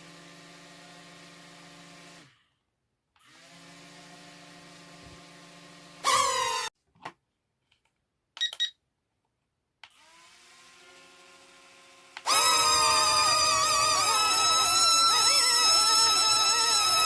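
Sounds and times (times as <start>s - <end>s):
small electric motor whirring: 3.2s - 6.7s, 9.9s - 17.0s.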